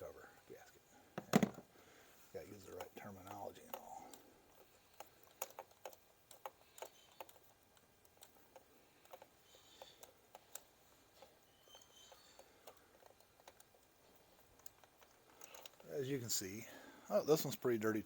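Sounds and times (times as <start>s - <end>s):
small tools clicking and tapping: 2.6s - 15.9s.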